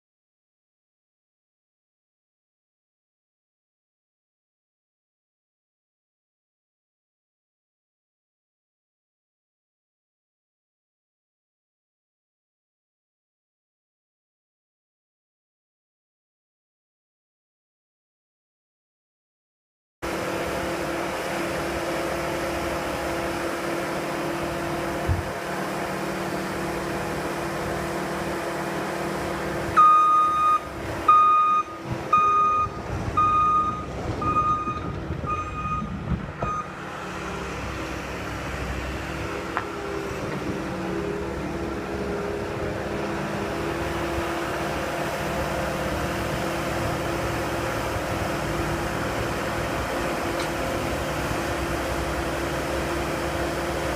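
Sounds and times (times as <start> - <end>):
skid steer engine running: 20.0 - 53.9
reversing alarm beeps: 29.8 - 36.8.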